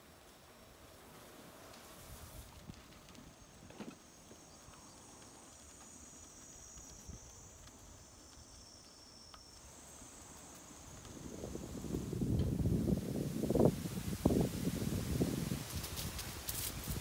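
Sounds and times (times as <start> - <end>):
insects trilling: 0.0 - 17.0
lower insect trill: 1.6 - 17.0
low wind rumble: 9.7 - 17.0.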